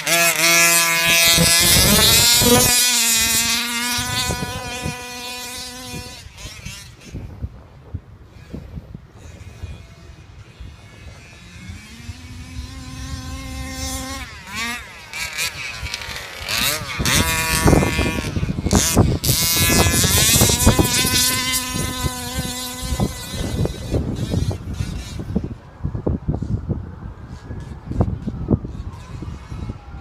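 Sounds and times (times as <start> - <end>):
two-stroke engine revving: 0.0 - 7.2, 9.2 - 25.5.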